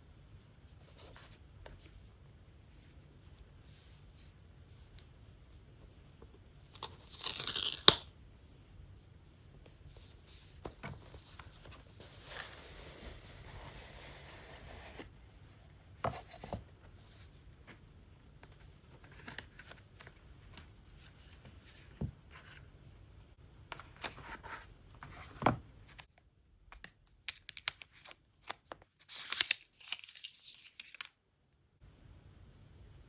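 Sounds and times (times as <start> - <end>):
paper or plastic tearing: 7.0 - 8.0.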